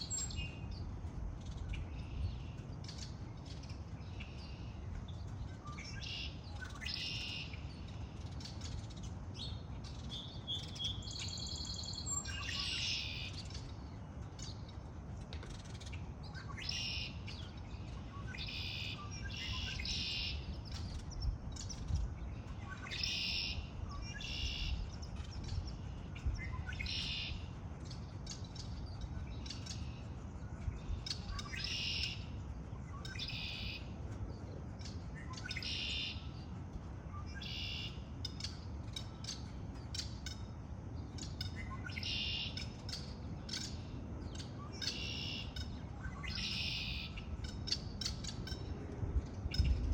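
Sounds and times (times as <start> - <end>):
birds singing and chirping: 0.0 - 49.9
low background rumble: 0.0 - 49.9.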